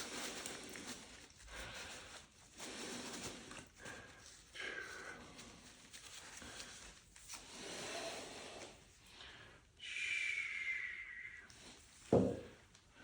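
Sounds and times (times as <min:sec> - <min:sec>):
cloth rustling while wiping: 0:00.0 - 0:08.1.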